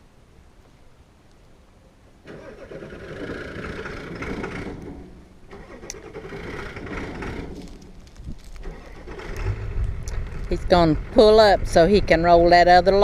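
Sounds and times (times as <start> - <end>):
vehicle engine running: 2.8 - 13.0.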